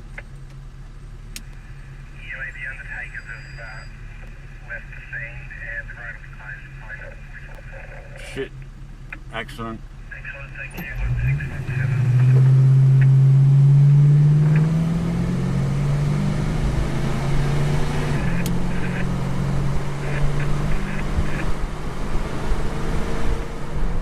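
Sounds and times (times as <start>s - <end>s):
vehicle engine accelerating: 10.1s - 24.0s.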